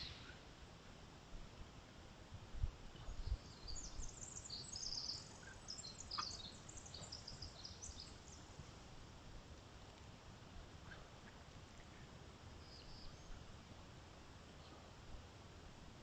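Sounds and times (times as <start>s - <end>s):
small birds twittering: 3.0s - 8.6s.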